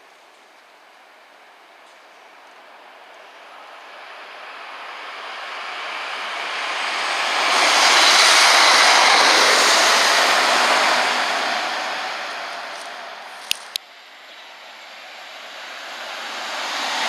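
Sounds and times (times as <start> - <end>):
train passing at speed: 2.5 - 17.0.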